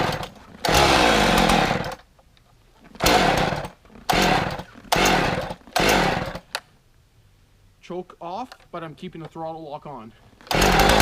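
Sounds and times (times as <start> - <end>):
chainsaw engine briefly firing: 0.0 - 2.0, 3.0 - 6.5, 10.5 - 11.0
chainsaw recoil starter pulls: 0.0 - 2.1, 2.9 - 6.6, 10.4 - 11.0.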